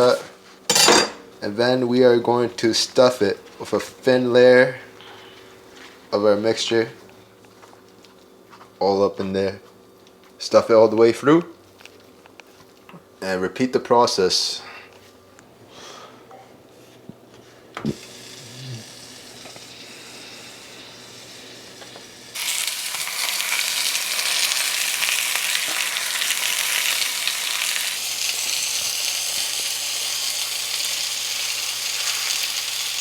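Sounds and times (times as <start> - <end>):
food frying with loud sizzle: 17.9 - 33.0.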